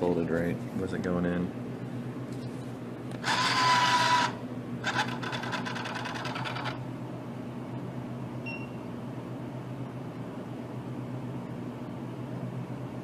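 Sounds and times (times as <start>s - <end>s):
machine low hum: 0.0s - 13.0s
bill acceptor motor whirring: 3.1s - 6.8s.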